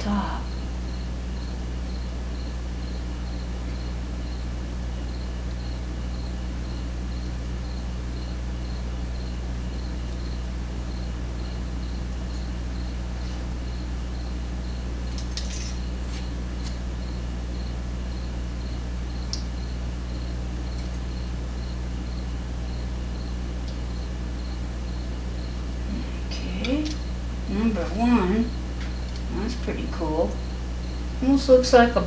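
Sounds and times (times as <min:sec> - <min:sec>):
low electrical hum: 0:00.0 - 0:32.0
small metallic clicks: 0:15.1 - 0:16.8, 0:26.6 - 0:27.1.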